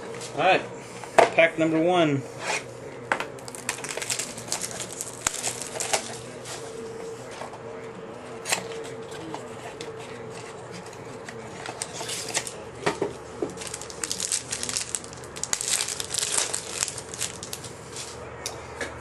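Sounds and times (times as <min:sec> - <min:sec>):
card pack wrapper tearing: 0:03.4 - 0:06.2, 0:11.7 - 0:12.6, 0:13.5 - 0:17.7
wrapper crinkling: 0:03.4 - 0:06.3, 0:11.7 - 0:12.6, 0:13.4 - 0:18.2.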